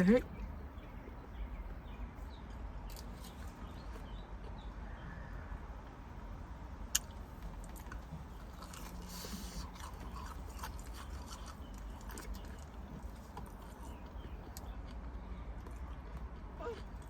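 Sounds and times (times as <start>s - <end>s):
person chewing and crunching food: 6.9s - 17.0s.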